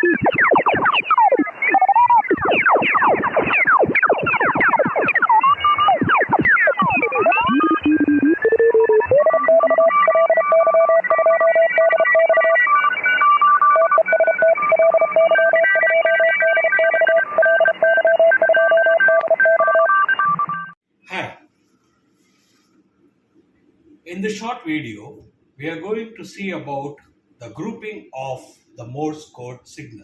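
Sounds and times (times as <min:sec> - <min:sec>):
electronic morse code beeps: 0:00.0 - 0:20.8.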